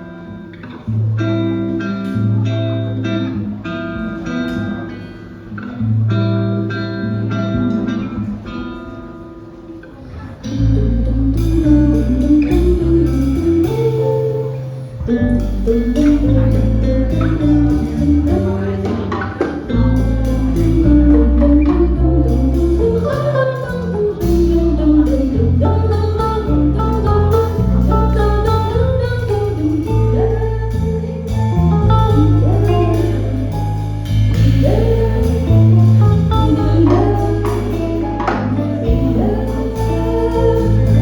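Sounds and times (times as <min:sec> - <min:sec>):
guitar: 0:00.0 - 0:41.0
person singing: 0:10.0 - 0:41.0
band playing: 0:10.6 - 0:41.0.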